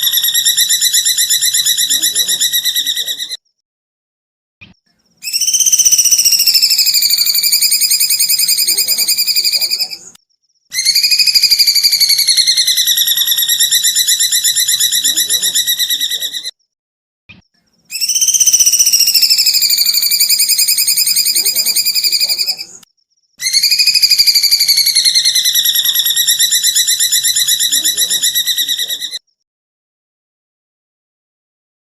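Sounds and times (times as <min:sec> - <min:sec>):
songbird trilling: 0:00.0 - 0:03.4, 0:05.2 - 0:16.5, 0:17.9 - 0:22.8, 0:23.4 - 0:29.2.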